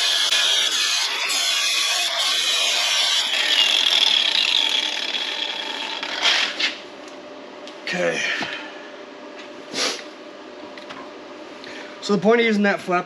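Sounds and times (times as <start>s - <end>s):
angle grinder grinding steel: 0.0s - 6.8s.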